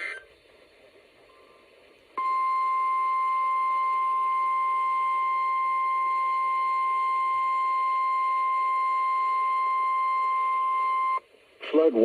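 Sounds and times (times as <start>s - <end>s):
light radio hiss: 0.0s - 2.2s, 11.2s - 12.0s
steady alarm tone beep: 2.2s - 11.2s.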